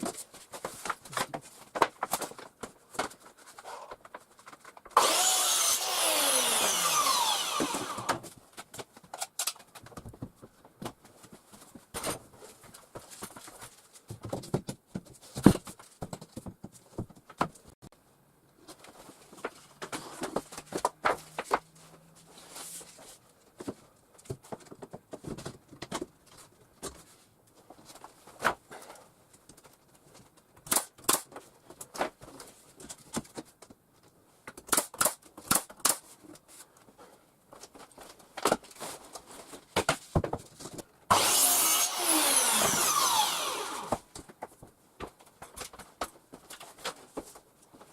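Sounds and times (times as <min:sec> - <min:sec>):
power tool running: 0:05.0 - 0:08.2, 0:41.1 - 0:44.0.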